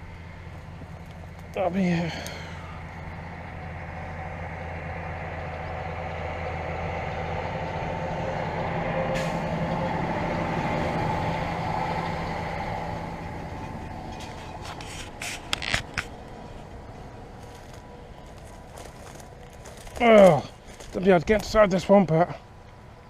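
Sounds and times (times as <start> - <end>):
vehicle engine passing by: 0.0 - 15.4.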